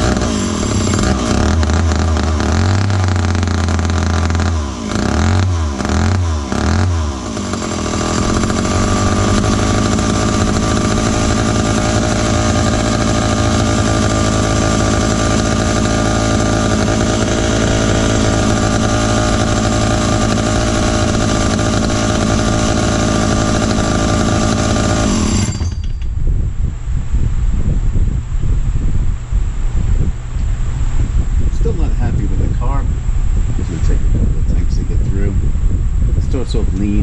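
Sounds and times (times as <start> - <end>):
chainsaw engine running: 0.0 - 26.0.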